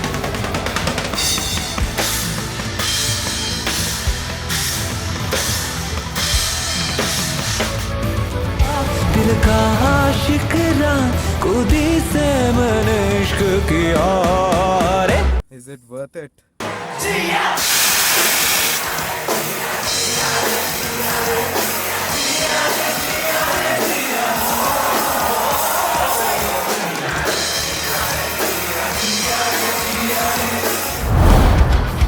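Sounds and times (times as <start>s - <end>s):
loud rock music: 0.0s - 15.2s, 18.9s - 32.0s
heavy low drum hits: 31.0s - 32.0s.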